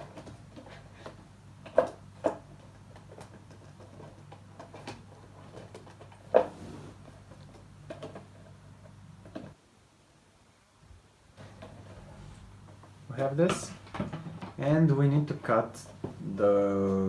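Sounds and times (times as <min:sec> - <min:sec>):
plastic parts clicking and knocking: 0:00.0 - 0:06.3
low steady hum: 0:11.4 - 0:17.0.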